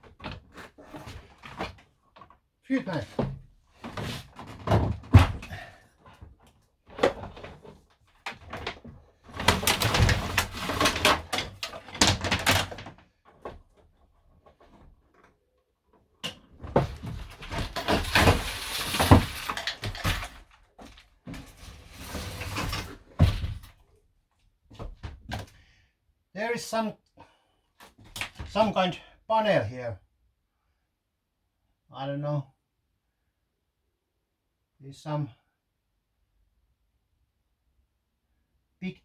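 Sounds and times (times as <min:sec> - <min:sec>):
scraping and clattering: 0:06.9 - 0:12.9, 0:16.6 - 0:23.8.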